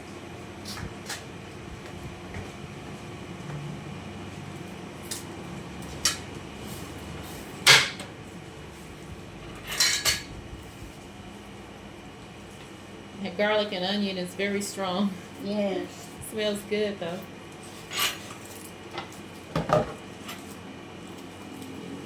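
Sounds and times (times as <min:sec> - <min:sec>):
utensils rattling clatter: 0:09.5 - 0:10.3, 0:17.1 - 0:18.8
kitchen utensils and dishes clinking: 0:09.6 - 0:10.3, 0:17.8 - 0:18.7.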